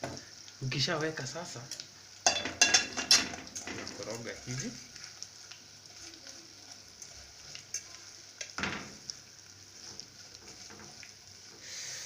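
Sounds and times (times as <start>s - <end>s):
fish sizzling in oil: 0.0s - 12.0s.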